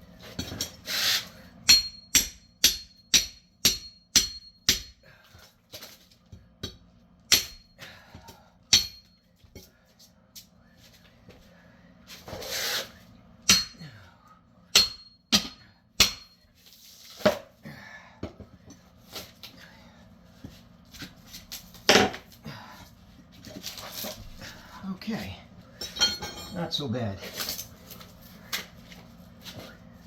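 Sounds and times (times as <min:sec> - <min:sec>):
hammer striking steel: 0:01.6 - 0:05.0, 0:06.6 - 0:07.7, 0:08.7 - 0:09.1, 0:13.5 - 0:13.8, 0:14.7 - 0:16.4.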